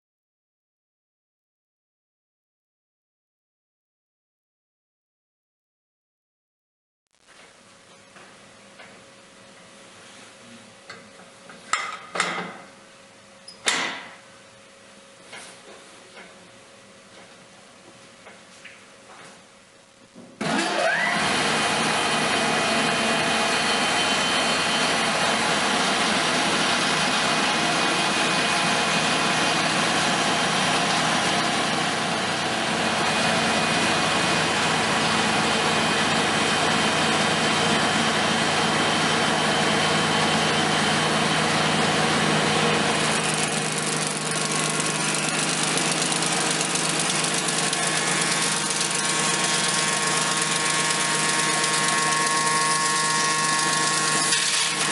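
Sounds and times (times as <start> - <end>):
machine mechanical hum: 7.2 - 21.1, 22.0 - 54.9
machine spinning up whine: 20.4 - 54.9.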